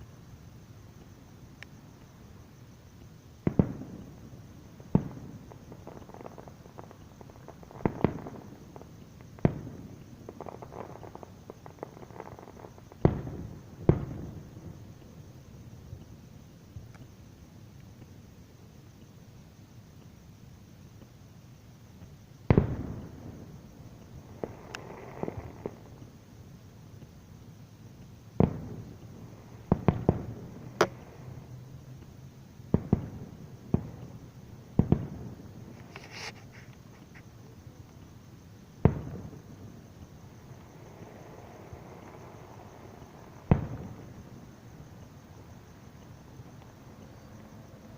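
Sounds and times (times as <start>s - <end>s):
small firework pops: 3.0s - 18.2s, 20.9s - 21.2s, 22.0s - 26.2s, 28.0s - 38.2s, 38.8s - 47.2s
firework shells booming: 28.4s - 31.4s, 40.5s - 44.3s.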